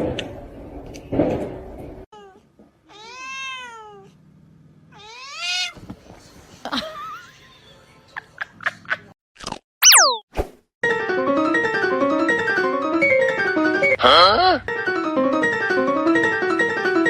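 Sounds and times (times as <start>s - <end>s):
cat meowing: 2.2s - 4.1s, 4.9s - 5.8s.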